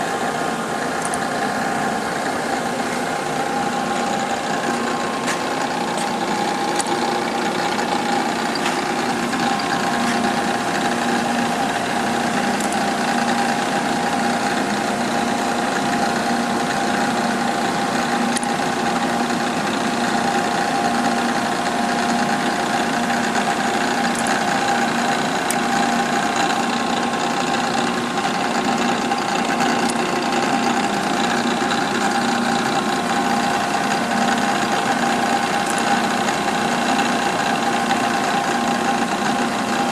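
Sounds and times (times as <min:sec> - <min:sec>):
grinder mechanical hum: 0:00.0 - 0:39.9.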